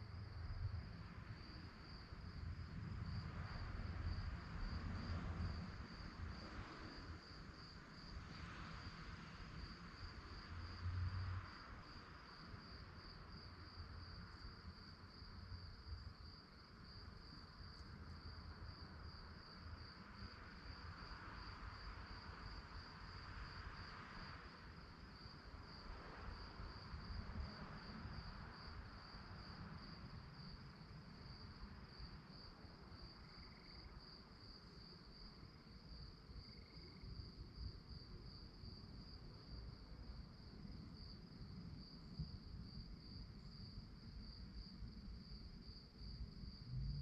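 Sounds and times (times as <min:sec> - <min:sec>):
crickets chirping: 0:00.0 - 0:47.0
low background rumble: 0:41.1 - 0:47.0.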